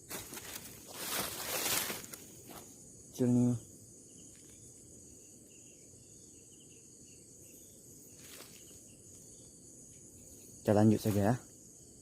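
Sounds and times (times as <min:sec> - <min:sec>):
insects chorus: 0:00.0 - 0:12.0.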